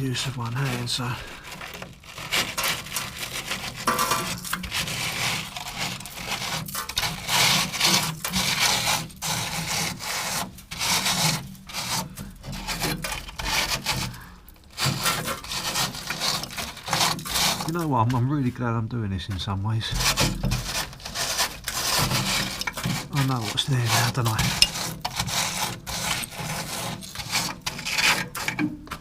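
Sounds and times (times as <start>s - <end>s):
rusted steel being sawn: 0.0s - 18.4s, 19.4s - 28.7s.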